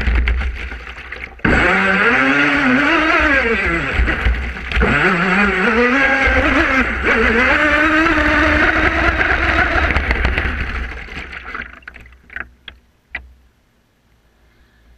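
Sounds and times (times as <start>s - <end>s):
electric motor whining: 1.4s - 10.6s.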